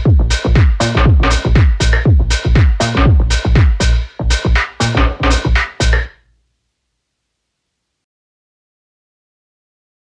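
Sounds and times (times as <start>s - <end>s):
drum machine booming hits: 0.0s - 6.1s.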